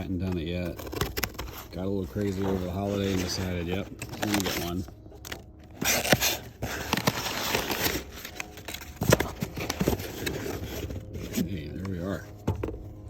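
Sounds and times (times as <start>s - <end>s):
packaging rustling and tearing: 0.0s - 12.2s.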